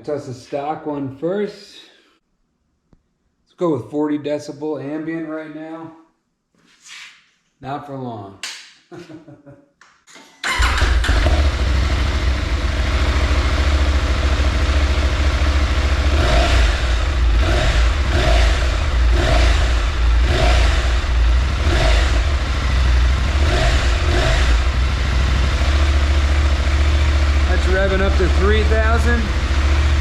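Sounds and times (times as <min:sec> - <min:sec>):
motorcycle engine idling: 0:10.5 - 0:30.0.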